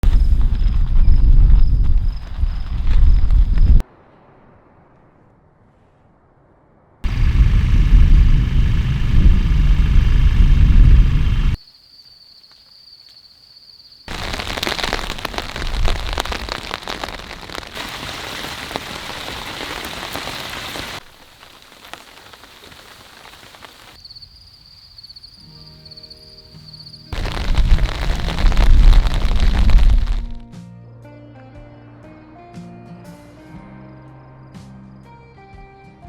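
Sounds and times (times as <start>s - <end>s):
low rumble of thunder: 6.9s - 11.6s, 27.2s - 30.4s
heavy rain pattering: 7.0s - 11.6s, 14.1s - 24.0s, 27.2s - 30.4s.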